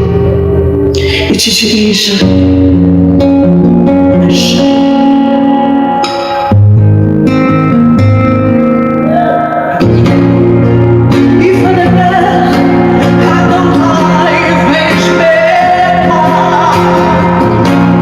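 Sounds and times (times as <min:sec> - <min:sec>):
person singing: 0:03.9 - 0:05.6, 0:09.0 - 0:18.0.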